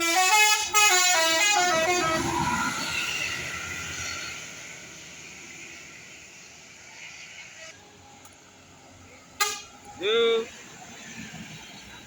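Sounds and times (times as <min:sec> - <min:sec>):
multi-tone bus air horn: 0:00.0 - 0:02.9, 0:09.4 - 0:09.8
bus engine and tyre noise: 0:00.0 - 0:12.0.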